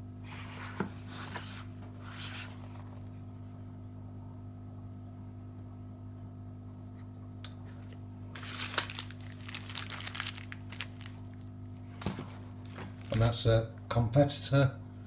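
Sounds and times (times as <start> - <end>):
steady low hum: 0.0 - 15.0
canvas case rustling and crackling: 8.4 - 11.4, 12.5 - 13.4.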